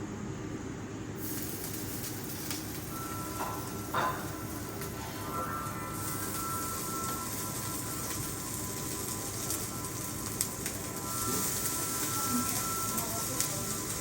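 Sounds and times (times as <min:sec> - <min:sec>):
steady hiss and hum: 0:00.0 - 0:14.0
egg sizzling in a pan: 0:01.2 - 0:14.0
faint sustained tone: 0:01.4 - 0:14.0.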